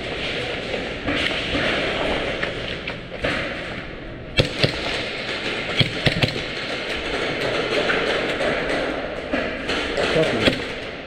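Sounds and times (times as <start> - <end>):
airsoft gunfire cracks: 4.4 - 8.5.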